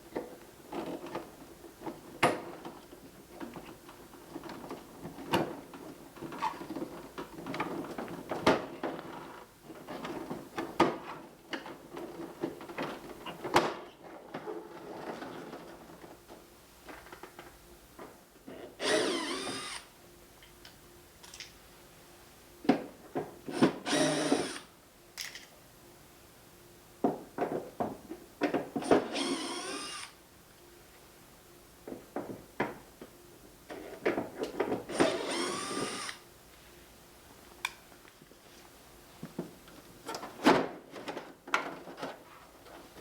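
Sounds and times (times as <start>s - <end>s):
electric screwdriver running: 18.8s - 19.9s, 23.8s - 24.7s, 29.1s - 30.2s, 34.9s - 36.2s.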